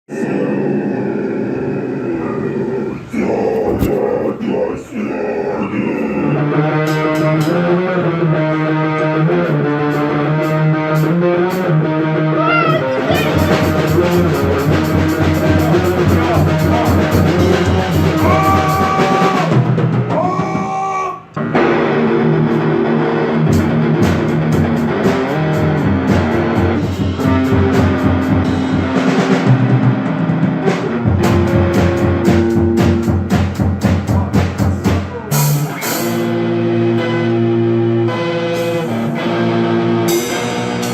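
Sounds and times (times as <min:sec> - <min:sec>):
bass guitar: 0:00.1 - 0:40.9
electric guitar: 0:05.6 - 0:40.9
drum kit: 0:06.3 - 0:40.9.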